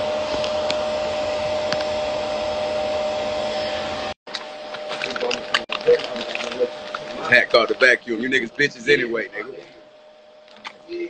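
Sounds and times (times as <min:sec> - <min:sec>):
hair dryer blowing air: 0:00.0 - 0:05.0.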